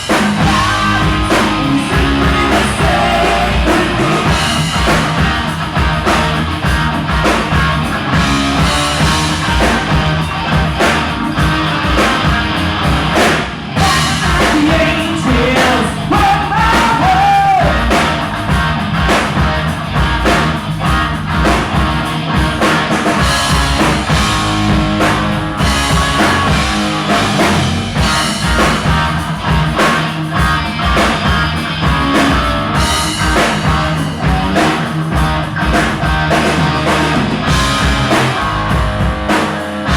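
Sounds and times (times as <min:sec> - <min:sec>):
person singing: 0:00.0 - 0:04.6, 0:13.8 - 0:18.0
drum kit: 0:00.0 - 0:39.9
electric guitar: 0:00.0 - 0:39.9.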